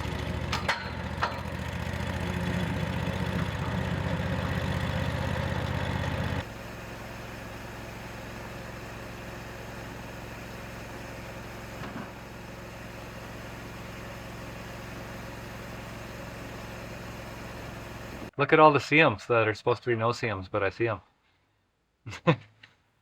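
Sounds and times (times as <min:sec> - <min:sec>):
engine running then idling: 0:00.0 - 0:18.3.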